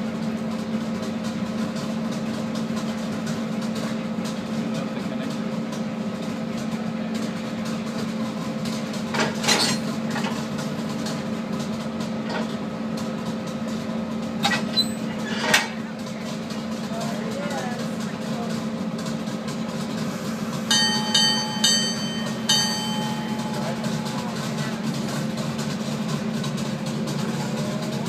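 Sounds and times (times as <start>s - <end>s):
vehicle motor hum: 18.7s - 28.0s.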